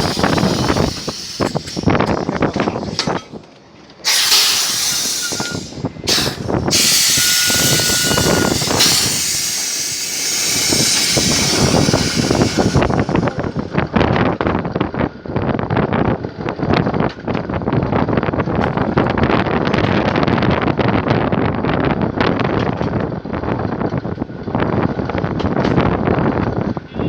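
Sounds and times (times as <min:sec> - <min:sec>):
loud bursts of hissing: 0:00.0 - 0:03.2, 0:04.0 - 0:13.7
machinery rattling clatter: 0:00.0 - 0:15.0.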